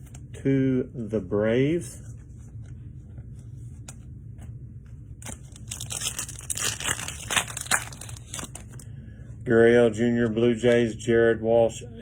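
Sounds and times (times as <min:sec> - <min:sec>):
foil wrapper tearing and crinkling: 0:05.2 - 0:08.8.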